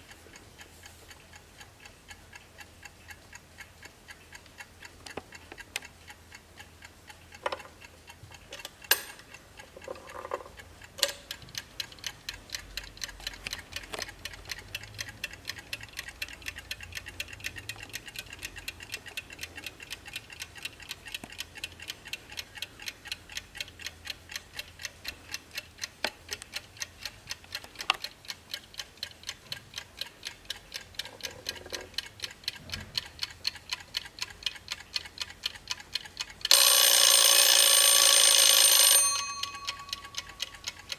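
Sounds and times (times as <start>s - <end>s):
wall clock ticking: 0.0s - 40.9s
loud clock clicks: 8.6s - 9.4s, 10.9s - 11.4s, 36.0s - 40.9s.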